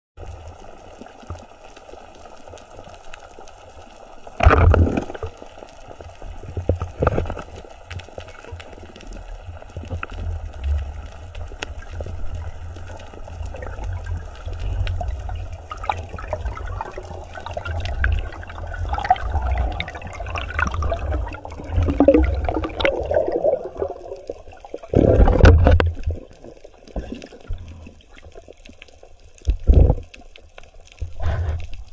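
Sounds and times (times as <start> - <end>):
water sloshing and splashing: 4.4 - 31.9
constant low rumble: 6.2 - 22.8.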